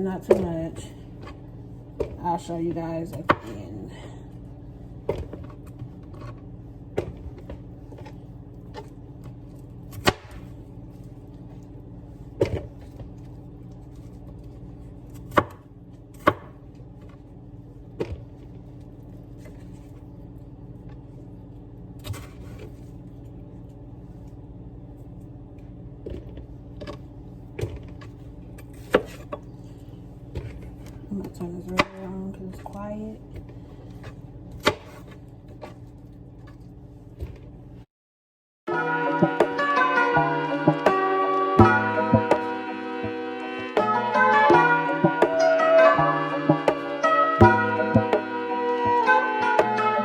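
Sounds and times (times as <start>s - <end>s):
steady low hum: 0.0s - 37.9s.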